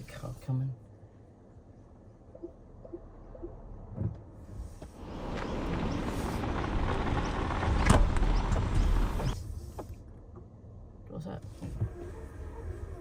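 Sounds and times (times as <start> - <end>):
passing car tyre noise: 4.6 - 9.4.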